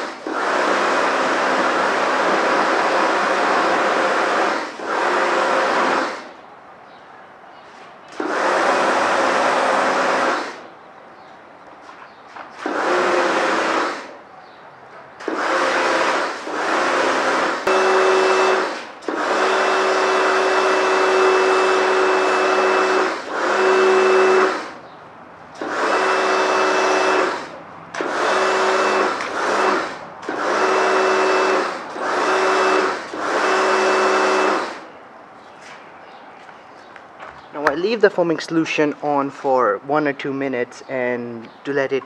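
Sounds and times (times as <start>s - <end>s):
pressure washer motor hum: 0.0s - 6.4s, 8.1s - 10.7s, 12.6s - 14.2s, 15.2s - 35.0s.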